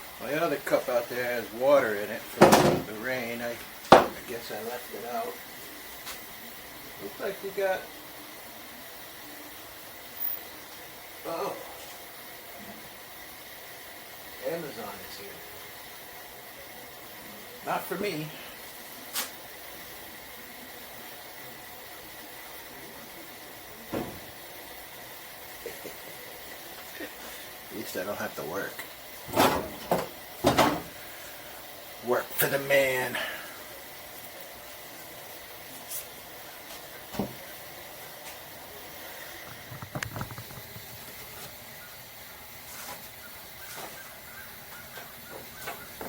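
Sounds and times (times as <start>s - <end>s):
steady hiss: 0.0s - 46.0s
knocks: 3.9s - 4.2s.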